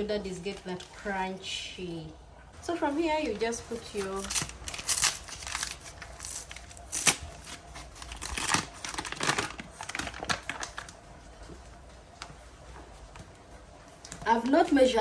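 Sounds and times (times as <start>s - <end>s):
plastic packet crinkling: 3.6s - 11.0s.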